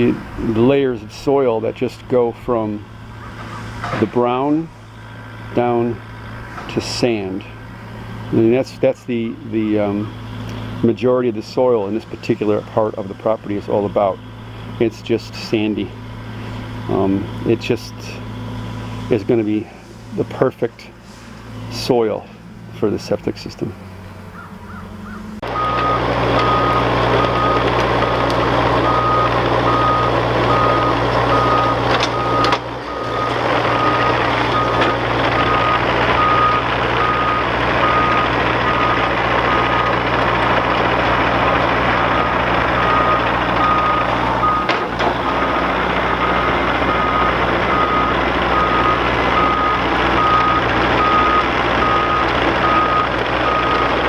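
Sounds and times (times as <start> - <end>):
heavy diesel engine running: 0.0 - 54.0
backup alarm beeping: 25.4 - 40.0, 41.5 - 54.0.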